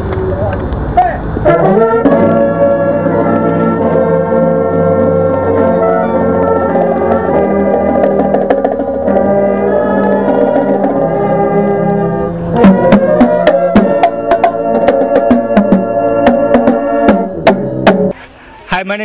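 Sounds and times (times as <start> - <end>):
held keyboard chords: 1.4 - 18.2
drum and percussion hits: 5.3 - 11.1, 12.5 - 18.2.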